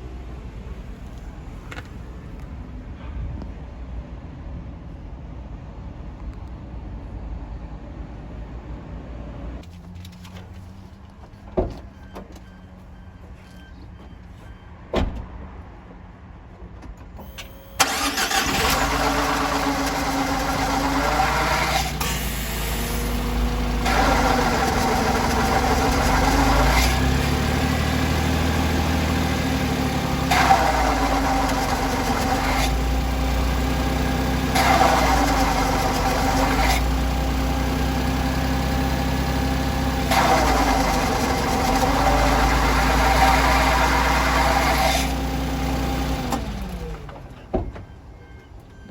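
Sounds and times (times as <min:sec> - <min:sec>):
van engine running harshly: 0:17.2 - 0:47.7.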